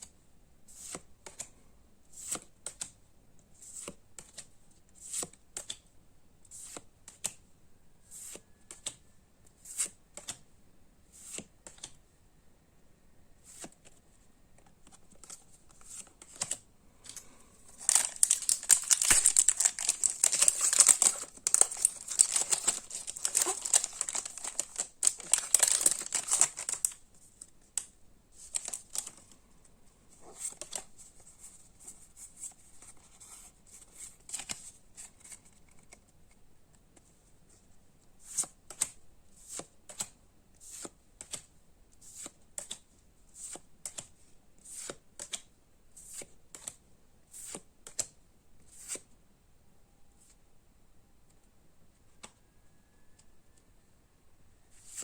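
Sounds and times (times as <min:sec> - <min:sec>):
foil pack tearing and crinkling: 0:17.8 - 0:27.0, 0:28.4 - 0:29.1
trading cards flicking: 0:17.8 - 0:27.0.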